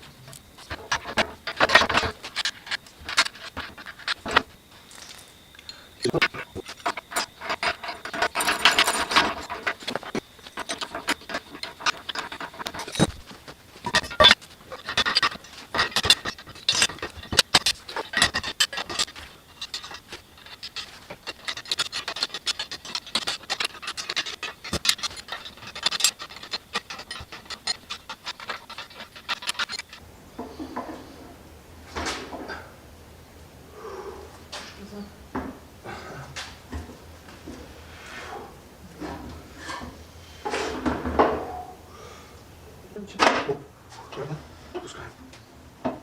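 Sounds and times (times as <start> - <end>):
metal tools clattering and scraping: 0.2 - 31.3.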